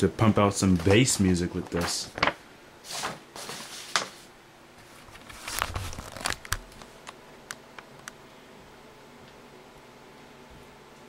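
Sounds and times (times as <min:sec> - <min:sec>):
wrapping crinkling: 0:04.9 - 0:06.9.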